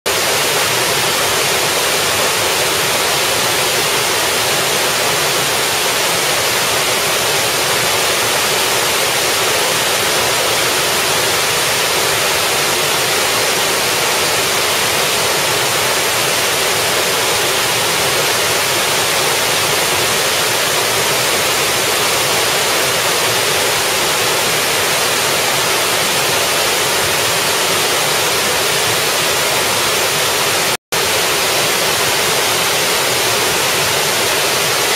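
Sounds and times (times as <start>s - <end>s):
waterfall splashing onto rocks: 0.1s - 34.9s.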